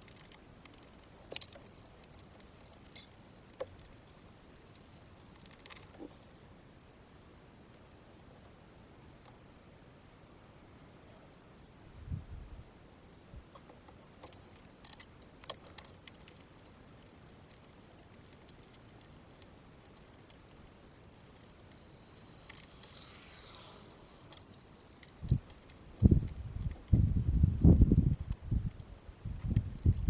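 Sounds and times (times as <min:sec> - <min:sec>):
metal parts clicking and clinking: 0:00.0 - 0:06.1, 0:13.6 - 0:23.4, 0:24.2 - 0:27.1, 0:28.0 - 0:30.0
soft hiss: 0:00.0 - 0:30.0.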